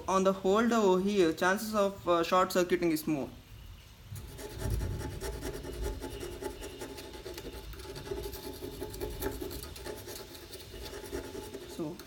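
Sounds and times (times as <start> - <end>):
tool scraping rust off metal: 4.2 - 12.0.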